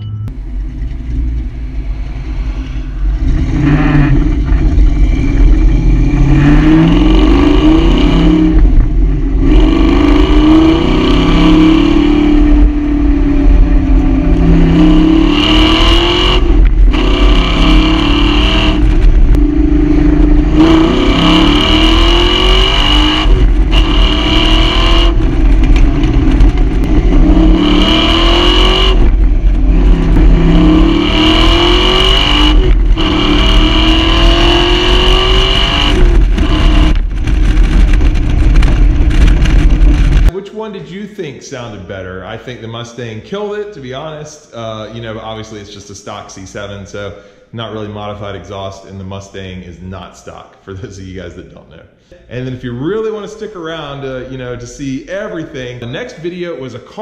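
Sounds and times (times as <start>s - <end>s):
car exhaust revving hard: 0.3s - 40.4s.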